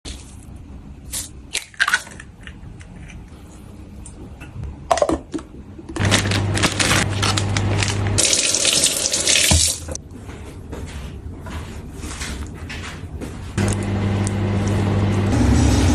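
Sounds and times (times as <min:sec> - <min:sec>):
tap running into a sink: 0:09.3 - 0:10.0.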